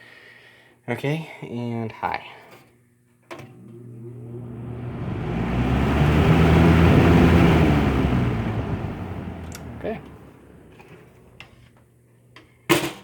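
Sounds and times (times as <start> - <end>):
fan motor humming: 3.5 - 11.5
rush of air: 4.0 - 11.3.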